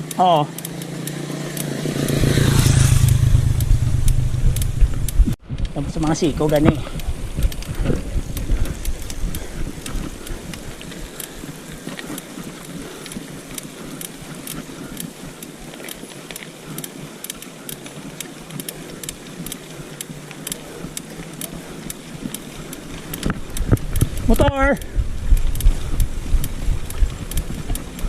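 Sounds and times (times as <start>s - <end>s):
sharp clicks and rattles: 0.0s - 28.0s
tyre and road noise: 0.0s - 28.0s
wind rumble on microphone: 1.7s - 15.8s, 20.8s - 28.0s.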